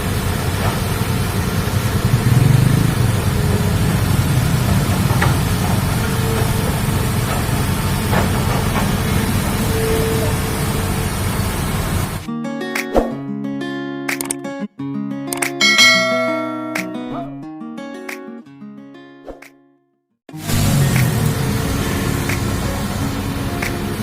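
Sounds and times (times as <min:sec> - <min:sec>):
diesel engine low rumble: 0:00.0 - 0:12.3, 0:20.4 - 0:24.0.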